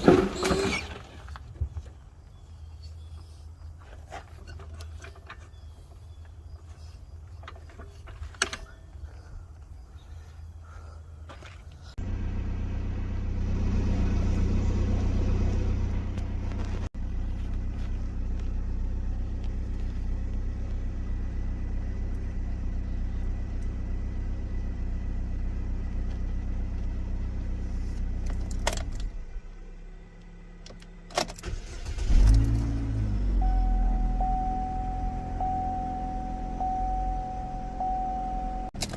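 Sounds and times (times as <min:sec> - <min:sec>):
car engine running: 0:11.4 - 0:38.9.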